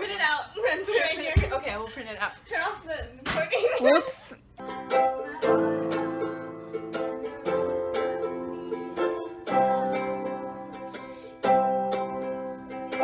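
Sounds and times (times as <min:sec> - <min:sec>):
strummed string instrument chords: 0:04.6 - 0:13.0.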